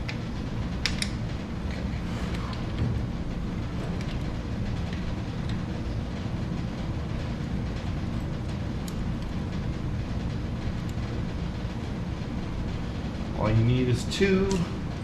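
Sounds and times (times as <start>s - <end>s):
low mechanical rumble: 0.0s - 15.0s.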